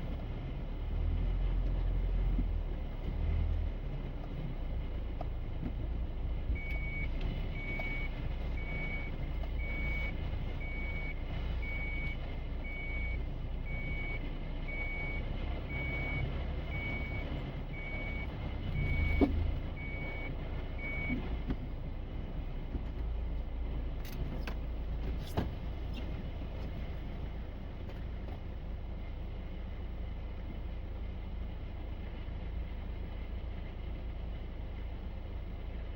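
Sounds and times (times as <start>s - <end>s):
low engine rumble: 0.0s - 35.9s
vehicle warning beeper: 6.5s - 21.3s.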